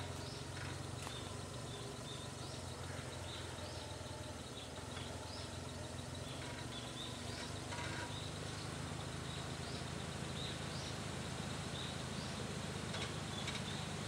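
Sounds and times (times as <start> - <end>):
small engine idling: 0.0 - 14.0
bird chirping: 0.1 - 11.0.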